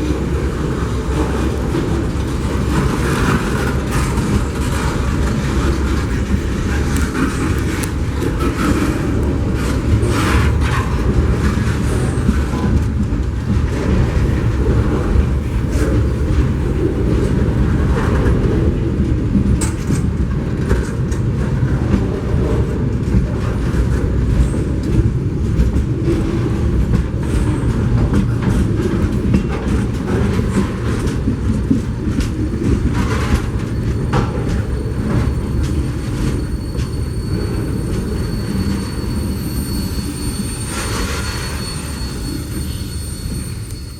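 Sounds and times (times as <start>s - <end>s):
freight train wheels rumbling: 0.0s - 43.9s
high-pitched squeal: 33.6s - 43.9s.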